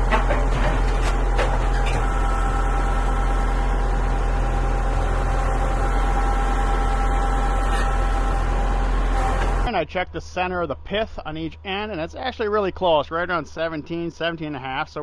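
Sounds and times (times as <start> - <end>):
sawmill engine running: 0.0 - 9.7.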